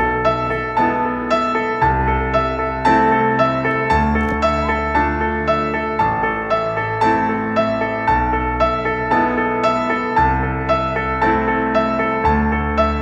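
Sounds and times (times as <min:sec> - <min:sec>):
bass line: 0:00.0 - 0:13.0
gentle piano piece: 0:00.0 - 0:13.0.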